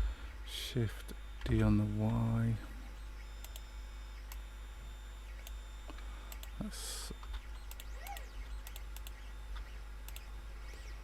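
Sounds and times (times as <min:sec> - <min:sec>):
steady low hum: 0:00.0 - 0:11.0
keyboard and mouse clicking: 0:07.6 - 0:10.3.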